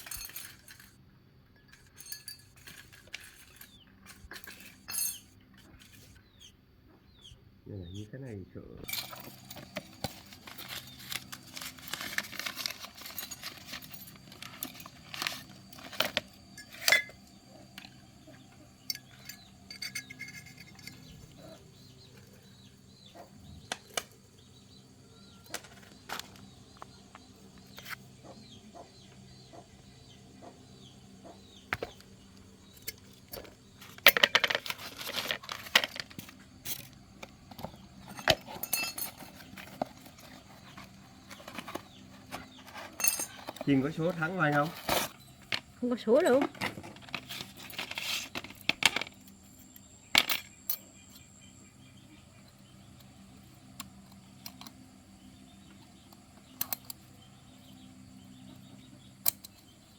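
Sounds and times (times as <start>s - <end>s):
metal tools clinking and knocking: 0.0s - 1.0s, 1.6s - 6.2s, 8.8s - 51.4s
rattling metal clatter: 8.8s - 18.0s, 18.9s - 23.1s, 32.7s - 49.1s.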